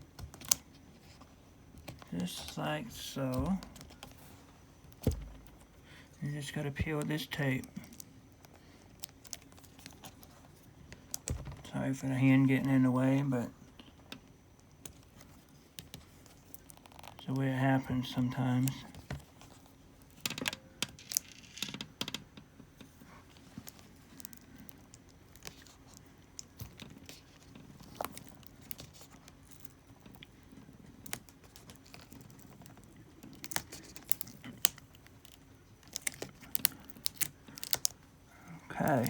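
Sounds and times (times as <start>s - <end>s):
small clicks handling laptop parts: 0.1s - 2.1s, 18.9s - 38.0s.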